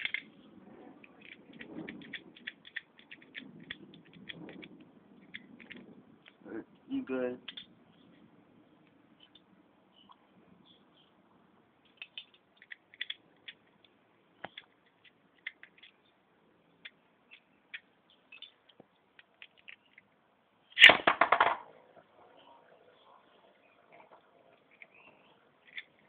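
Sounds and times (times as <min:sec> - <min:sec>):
plastic parts clicking: 0:00.0 - 0:00.3, 0:01.1 - 0:06.4, 0:07.4 - 0:07.7, 0:11.8 - 0:16.0, 0:16.8 - 0:20.1, 0:25.6 - 0:26.0.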